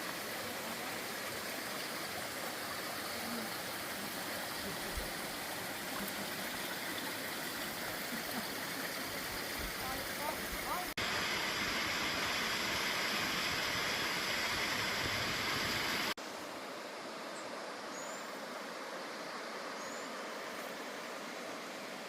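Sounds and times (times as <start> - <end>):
thin water hiss: 0.0 - 16.2
rush of falling water: 0.0 - 17.2.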